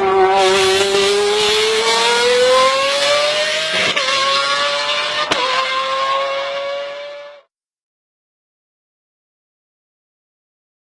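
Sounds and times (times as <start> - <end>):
car engine accelerating hard: 0.0 - 7.5.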